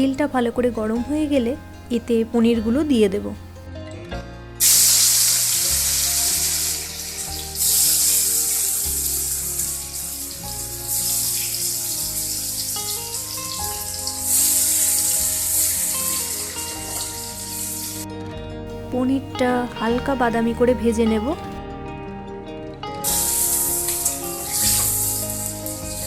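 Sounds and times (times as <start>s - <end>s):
soft background music: 0.0s - 26.0s
food sizzling in hot oil: 4.6s - 18.0s, 23.0s - 26.0s.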